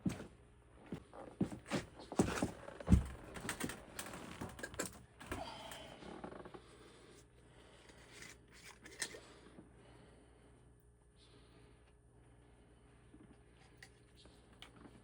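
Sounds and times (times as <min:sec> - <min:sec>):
tools and plastic parts rattling: 0:03.0 - 0:05.4.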